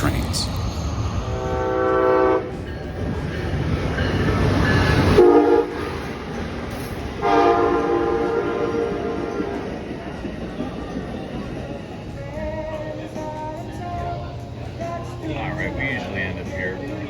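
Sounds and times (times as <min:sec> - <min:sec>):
train rumbling: 0:00.0 - 0:17.0
train horn blasts: 0:01.3 - 0:02.7, 0:05.2 - 0:06.0, 0:07.2 - 0:09.6.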